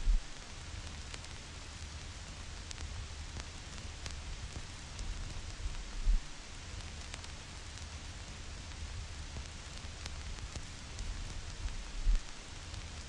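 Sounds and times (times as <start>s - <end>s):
low rumble: 0.0s - 0.3s, 5.6s - 6.3s
low thumps: 0.0s - 0.3s, 5.9s - 6.3s
vinyl crackles and pops: 0.0s - 13.0s
vinyl record hiss: 0.0s - 13.0s.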